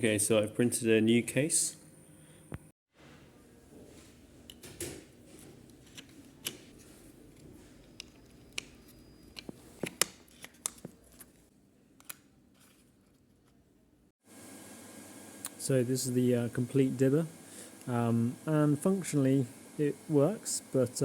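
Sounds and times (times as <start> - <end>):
plastic parts clicking and tapping: 7.8 - 11.3.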